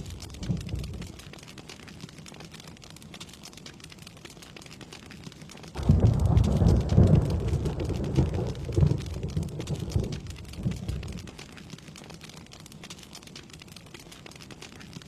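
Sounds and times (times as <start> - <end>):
thunder rumbling: 0.0 - 1.2, 5.8 - 11.4
rain pattering: 0.0 - 15.0.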